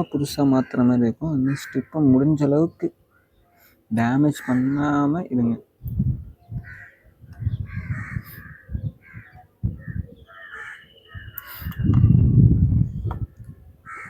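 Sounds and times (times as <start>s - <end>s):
crows cawing: 1.4s - 2.3s, 4.2s - 5.2s, 6.6s - 11.5s.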